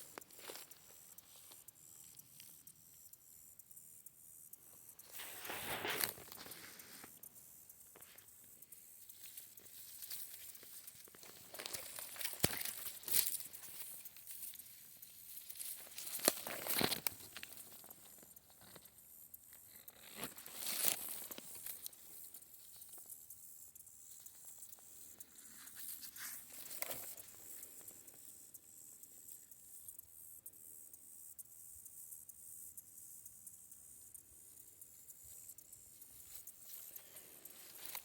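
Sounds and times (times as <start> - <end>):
dry stalks rustling and tearing: 5.1 - 7.1, 9.1 - 18.8, 19.7 - 23.0, 25.5 - 27.4, 36.2 - 38.0
stalks snapping: 9.2 - 14.6, 15.4 - 18.8.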